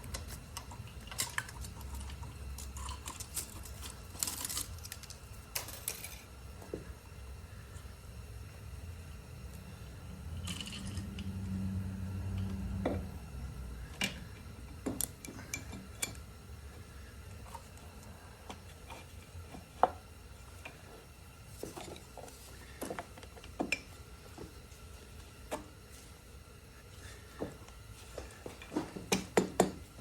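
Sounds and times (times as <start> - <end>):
low hum: 6.2 - 19.6.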